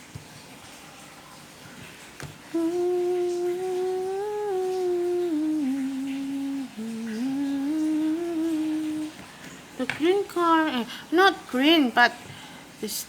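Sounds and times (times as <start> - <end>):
person humming a slow tune: 2.5 - 9.2.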